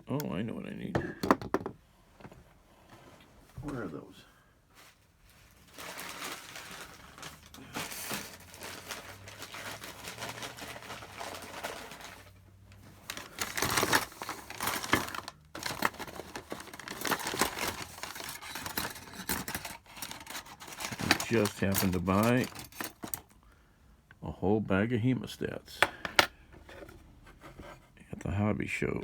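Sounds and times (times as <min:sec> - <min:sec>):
plastic packaging rustling: 0:04.7 - 0:23.4
small tools clicking and clattering: 0:13.0 - 0:23.4.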